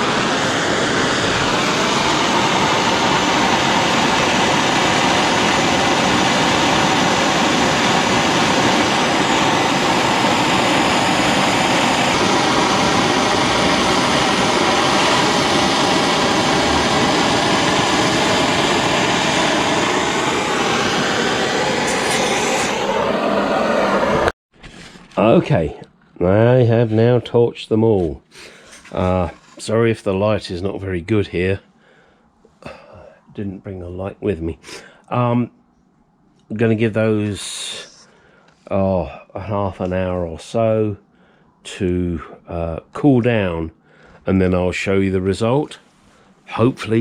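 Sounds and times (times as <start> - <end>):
gas torch flame rushing: 0.0 - 25.0.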